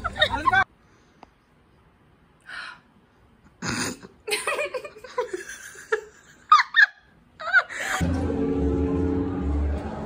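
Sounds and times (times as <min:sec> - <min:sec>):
people laughing and giggling: 0:00.0 - 0:00.7, 0:04.3 - 0:08.2.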